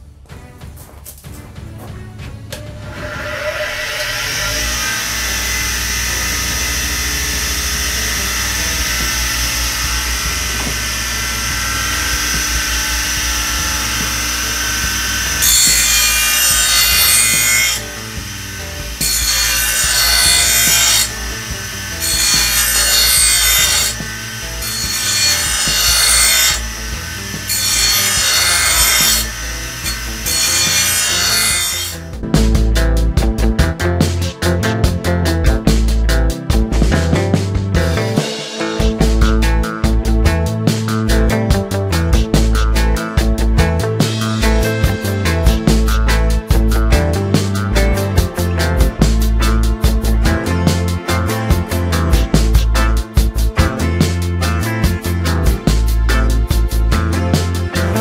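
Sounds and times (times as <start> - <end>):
power tool whining: 2.7 - 32.2.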